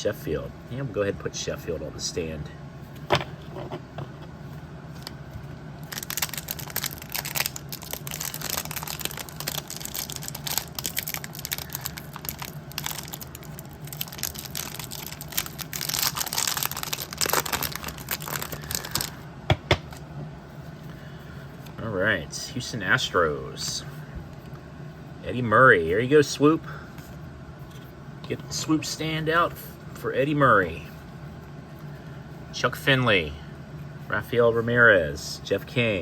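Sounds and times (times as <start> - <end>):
steady low hum: 0.0 - 36.0
wrapper crinkling and tearing: 5.8 - 19.2.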